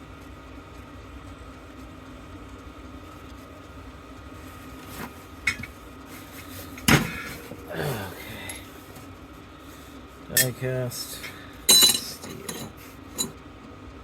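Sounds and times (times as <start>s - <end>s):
steady low hum: 0.0s - 14.0s
light clicks of metal parts: 10.3s - 13.4s
sharp metallic clank: 11.7s - 13.4s.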